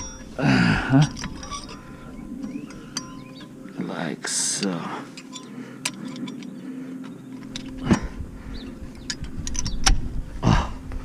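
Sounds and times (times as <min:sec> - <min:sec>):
metal clicks and clinks: 0:00.0 - 0:03.5, 0:04.6 - 0:08.0, 0:09.0 - 0:10.0.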